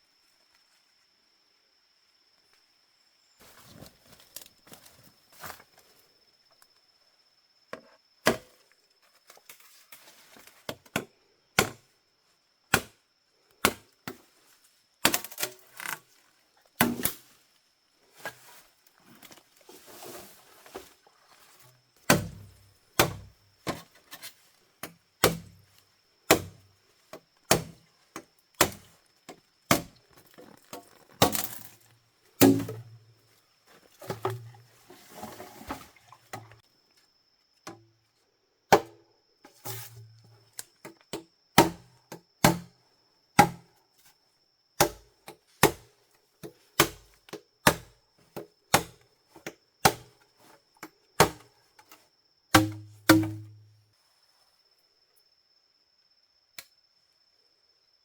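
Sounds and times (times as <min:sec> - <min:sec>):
blade chopping wood: 0:11.6 - 0:11.8, 0:12.7 - 0:13.0, 0:13.6 - 0:14.2, 0:16.8 - 0:17.2, 0:22.1 - 0:23.8, 0:24.8 - 0:25.6, 0:26.3 - 0:26.6, 0:27.5 - 0:27.8, 0:28.6 - 0:28.9, 0:29.7 - 0:30.0, 0:31.2 - 0:31.7, 0:32.4 - 0:32.9, 0:41.6 - 0:42.7, 0:43.4 - 0:43.7, 0:44.8 - 0:45.0, 0:45.6 - 0:45.9, 0:46.8 - 0:47.9, 0:48.7 - 0:49.0, 0:49.8 - 0:50.1, 0:51.2 - 0:51.5, 0:52.5 - 0:53.6.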